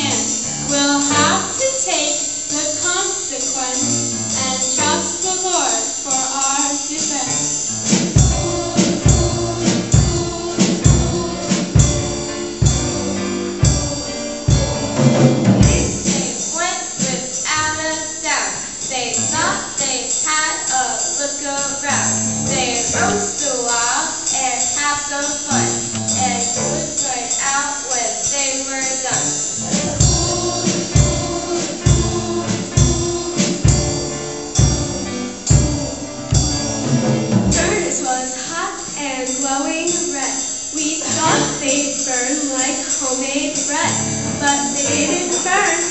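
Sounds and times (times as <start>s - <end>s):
sustained instrument tones: 0.0s - 5.4s, 7.3s - 17.8s, 21.8s - 23.6s, 25.5s - 27.2s, 29.1s - 38.5s, 40.8s - 42.7s, 43.7s - 45.9s
steady drum beat: 0.0s - 5.6s, 6.2s - 27.2s, 29.0s - 45.9s
low kick drum: 8.0s - 16.1s, 29.6s - 37.9s.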